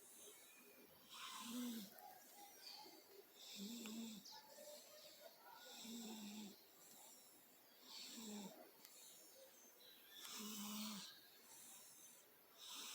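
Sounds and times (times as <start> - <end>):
cat snoring: 1.1 - 1.9, 3.4 - 4.2, 5.7 - 7.3, 7.9 - 9.2, 10.2 - 12.9.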